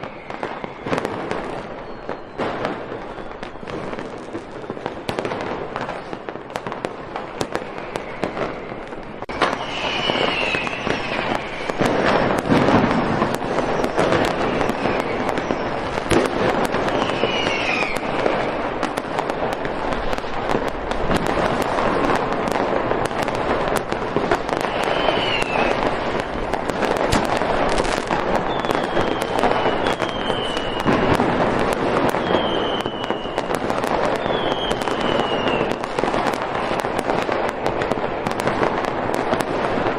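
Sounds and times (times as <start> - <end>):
falling firework whistles: 0.0 - 39.9
fireworks bangs: 0.0 - 39.9
fireworks crackling and popping: 0.0 - 39.9.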